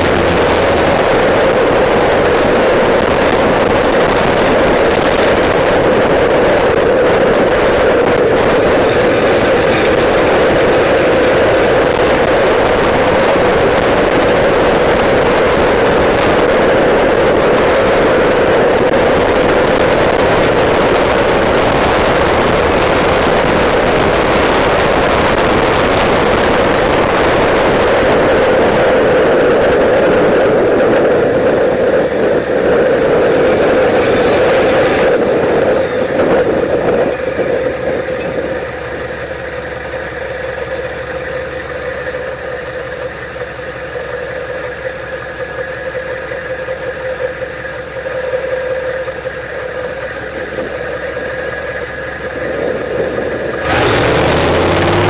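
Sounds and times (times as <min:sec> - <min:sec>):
diesel truck engine running loud: 0:00.0 - 0:55.0
turbo whistle: 0:32.8 - 0:38.4.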